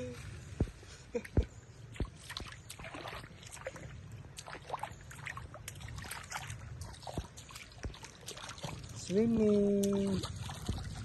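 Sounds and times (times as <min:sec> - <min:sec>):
water splashing in a pool: 0:00.0 - 0:11.0.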